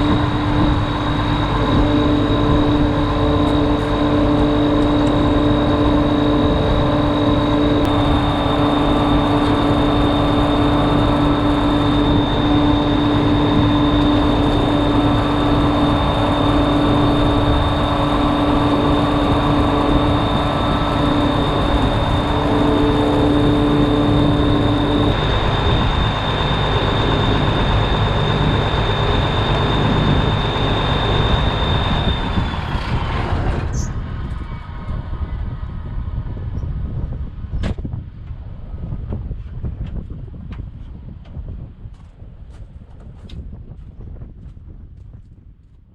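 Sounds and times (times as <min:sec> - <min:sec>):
combine harvester whining: 0:00.0 - 0:35.1
low hum: 0:00.0 - 0:45.9.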